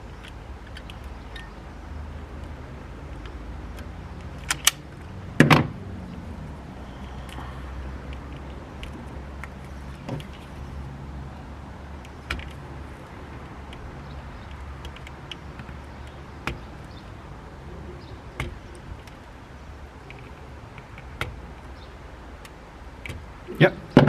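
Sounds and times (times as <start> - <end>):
tools and connectors clicking: 3.1 - 4.9, 13.3 - 16.7.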